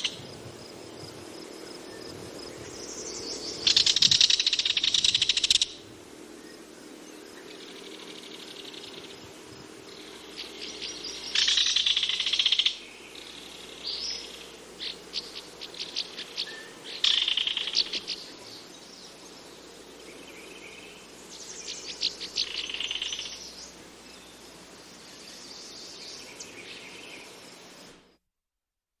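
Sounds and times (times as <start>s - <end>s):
low background hum: 0.0s - 28.0s
kingfisher rattling trills: 3.6s - 5.8s.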